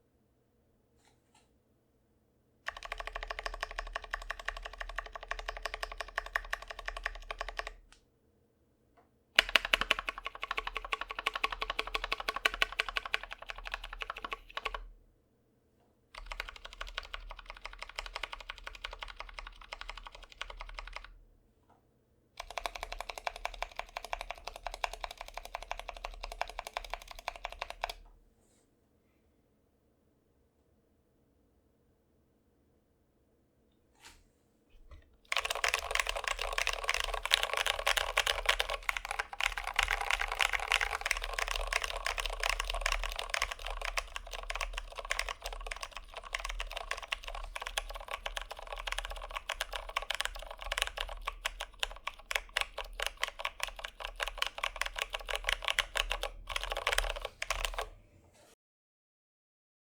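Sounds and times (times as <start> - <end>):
mechanical keyboard typing: 2.7 - 7.9, 9.4 - 14.9, 16.2 - 21.1, 22.4 - 28.0, 35.3 - 58.0.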